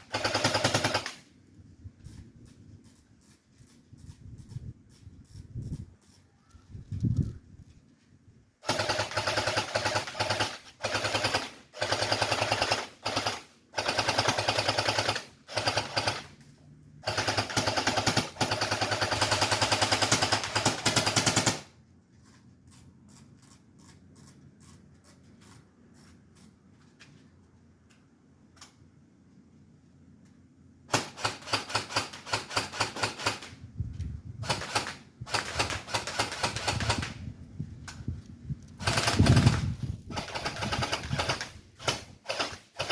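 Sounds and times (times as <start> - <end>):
airsoft gun firing bursts: 0.0 - 1.3, 8.6 - 16.3, 17.0 - 21.7, 30.9 - 33.6, 34.4 - 37.2, 38.8 - 42.9.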